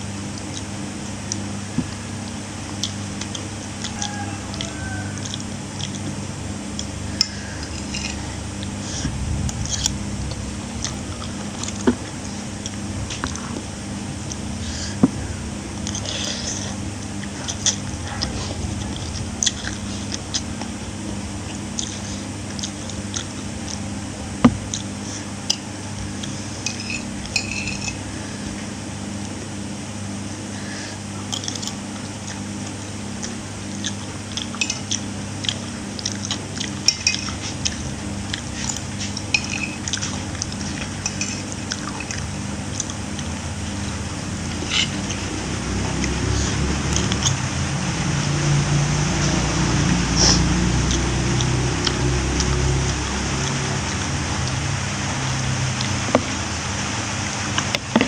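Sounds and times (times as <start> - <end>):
eating sounds: 0.0 - 29.5, 30.4 - 58.0
low steady hum: 0.0 - 58.0
spoon clinking on a plate: 26.6 - 28.0, 34.6 - 34.9, 39.4 - 39.8, 41.0 - 42.2.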